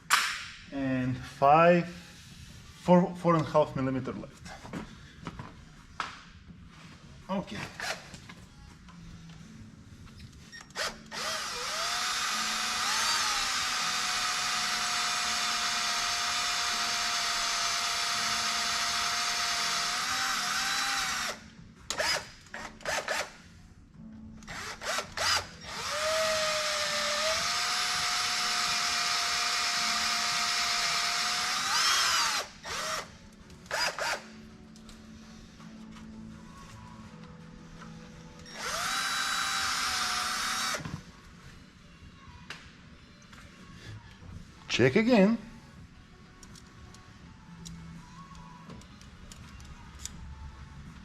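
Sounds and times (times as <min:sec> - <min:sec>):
power drill drilling: 0:10.7 - 0:23.3, 0:24.5 - 0:33.1, 0:33.7 - 0:34.2, 0:38.4 - 0:41.0.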